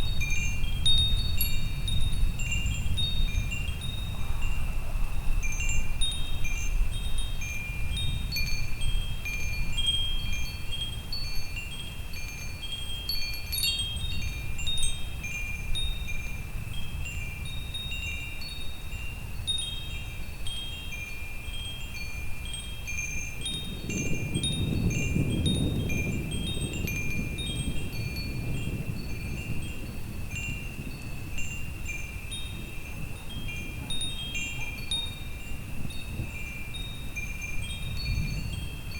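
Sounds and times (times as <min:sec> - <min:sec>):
wind chimes tinkling: 0:00.0 - 0:38.9
low rumble of thunder: 0:23.5 - 0:30.9.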